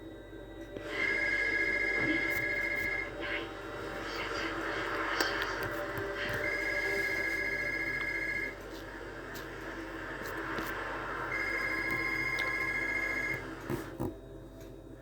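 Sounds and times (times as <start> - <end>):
telephone ringing: 6.3 - 8.7, 11.3 - 13.9.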